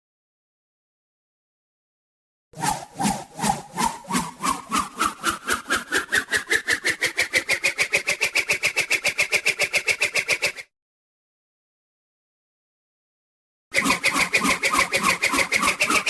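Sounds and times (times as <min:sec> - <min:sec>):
rising whistling tone: 0:02.6 - 0:05.8
cartoon swishes: 0:02.6 - 0:10.6, 0:13.8 - 0:16.0.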